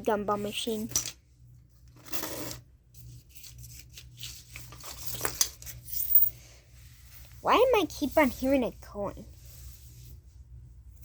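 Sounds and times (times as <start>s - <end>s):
rubbing and scraping handling: 2.0s - 10.5s
coin clink: 5.8s - 6.3s.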